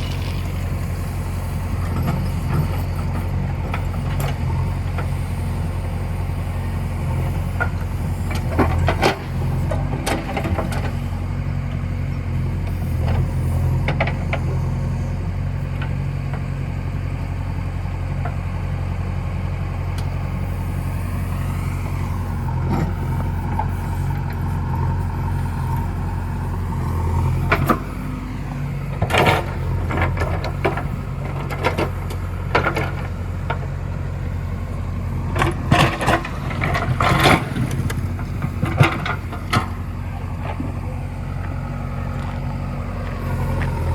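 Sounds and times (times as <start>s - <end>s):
diesel engine running: 0.0s - 43.9s
clanks and knocks: 35.3s - 39.7s.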